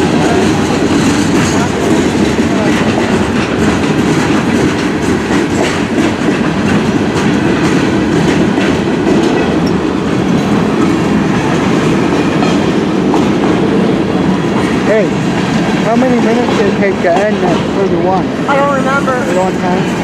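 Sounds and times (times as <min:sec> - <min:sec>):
wheels clacking over rail joints: 0:00.0 - 0:18.5
steel wheels rumbling on rail: 0:00.0 - 0:20.0.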